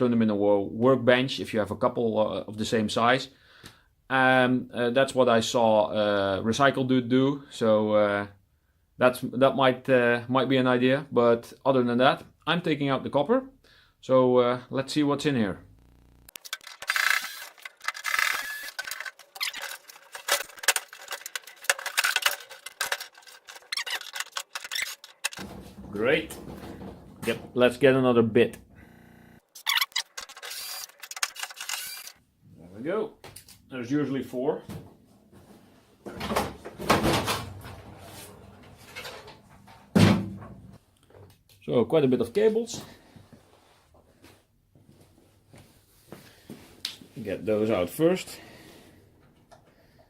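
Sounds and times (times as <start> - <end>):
hand tools clicking and rattling: 16.4 - 25.5
plastic casing scraping knocks: 21.7 - 27.6.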